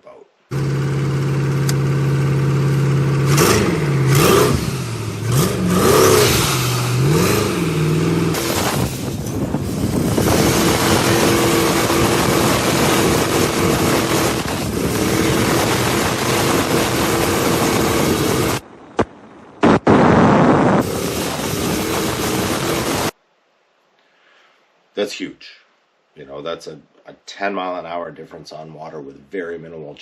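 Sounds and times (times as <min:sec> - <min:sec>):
boat engine revving: 0:00.5 - 0:18.6, 0:20.8 - 0:23.1.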